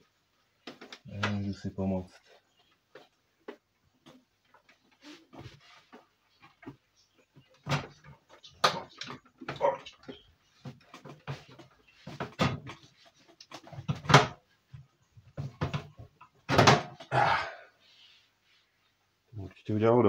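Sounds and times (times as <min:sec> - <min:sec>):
computer parts knocking and rattling: 0:06.4 - 0:17.0.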